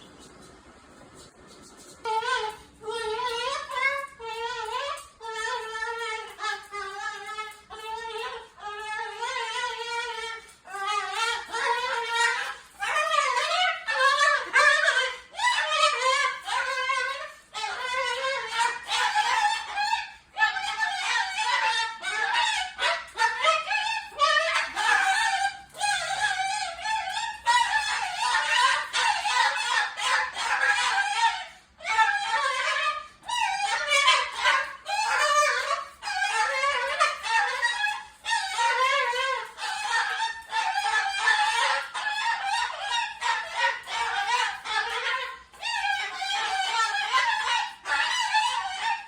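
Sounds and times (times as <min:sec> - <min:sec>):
cockatoo calling loudly: 0:00.0 - 0:49.0
parrot warbling and chattering: 0:00.0 - 0:49.0.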